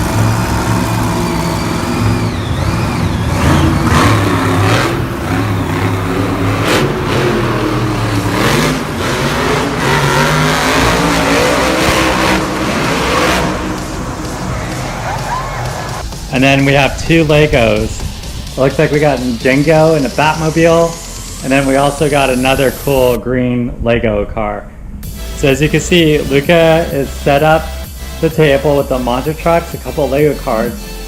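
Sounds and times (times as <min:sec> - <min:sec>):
engines revving: 0:00.0 - 0:23.8, 0:24.6 - 0:31.0
sharp bangs: 0:00.0 - 0:27.9.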